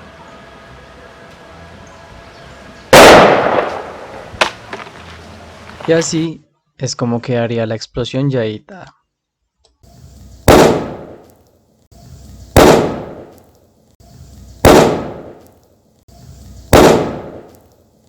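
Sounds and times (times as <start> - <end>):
explosion with hiss and bang: 2.9 - 4.6, 10.4 - 11.2, 12.5 - 13.3, 14.6 - 15.4, 16.6 - 17.5.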